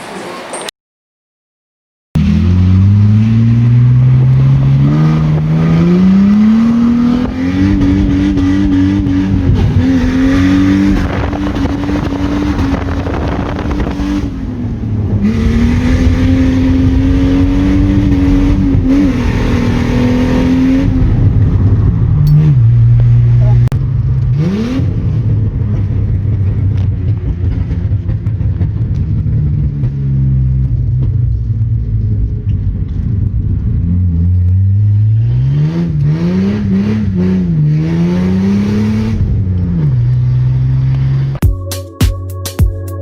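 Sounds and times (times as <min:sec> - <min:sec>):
car engine revving hard: 0:02.2 - 0:26.8, 0:33.9 - 0:41.4.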